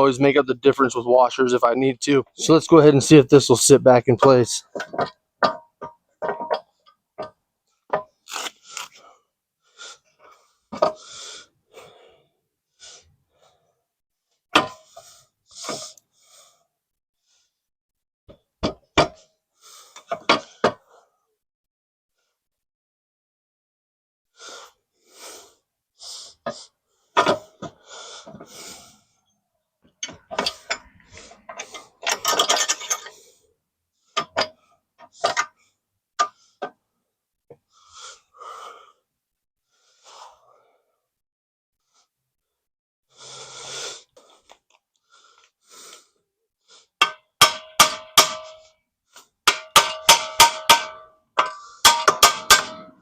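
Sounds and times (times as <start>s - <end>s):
metal clanks and knocks: 4.7s - 7.3s, 47.0s - 48.6s, 49.4s - 53.0s
hammer striking steel: 47.0s - 48.6s, 49.5s - 53.0s.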